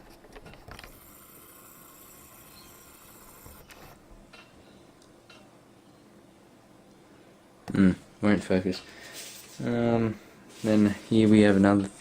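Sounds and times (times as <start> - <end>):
camera autofocus motor whir: 0.8 - 4.0.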